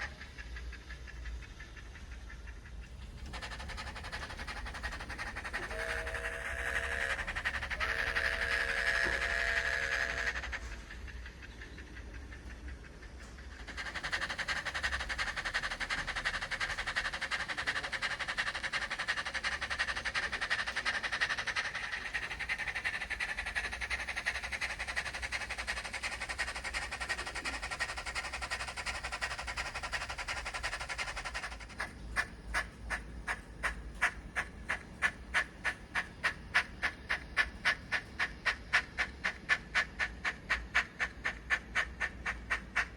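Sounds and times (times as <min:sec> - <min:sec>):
locomotive exhaust chuffs: 0:00.0 - 0:42.9
hiss of steam: 0:03.2 - 0:11.2, 0:13.4 - 0:42.9
steam locomotive whistle: 0:05.6 - 0:10.4.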